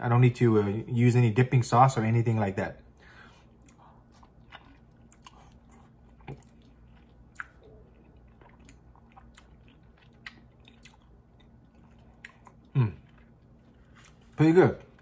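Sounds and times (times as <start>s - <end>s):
person chewing with mouth clicks: 3.5s - 14.2s.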